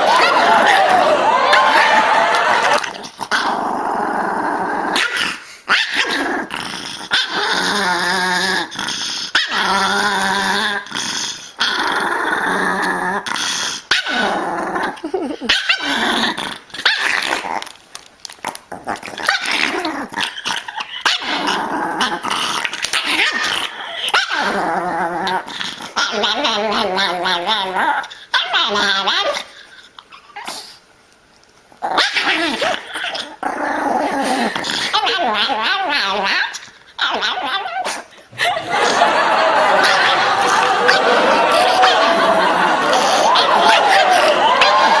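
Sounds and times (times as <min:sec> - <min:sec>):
dogs growling: 0:00.0 - 0:17.8, 0:18.4 - 0:29.6, 0:31.8 - 0:45.0
dogs barking: 0:37.4 - 0:45.0.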